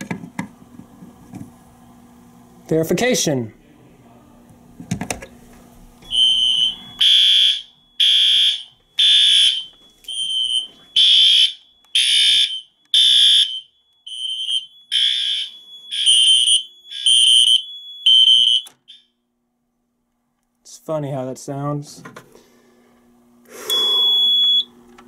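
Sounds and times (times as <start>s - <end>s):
fire alarm horn blasts: 6.1s - 19.2s, 23.7s - 24.7s.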